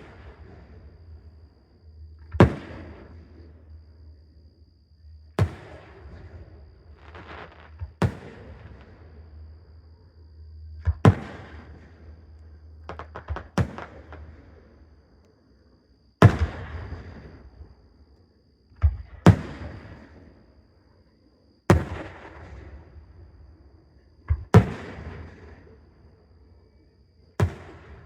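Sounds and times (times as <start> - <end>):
fireworks booming: 0.0 - 1.4, 2.2 - 3.7, 5.3 - 9.3, 10.8 - 12.2, 12.8 - 14.5, 16.2 - 17.4, 18.9 - 20.3, 24.3 - 25.6, 27.4 - 28.0
small fireworks pop: 5.4 - 9.1, 10.8 - 14.7, 27.4 - 28.0.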